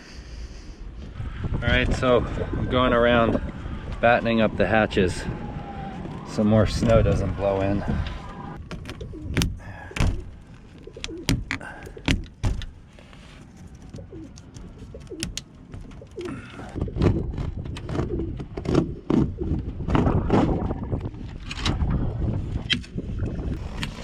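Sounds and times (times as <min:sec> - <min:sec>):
pigeons cooing: 0:07.9 - 0:12.4, 0:13.8 - 0:19.7.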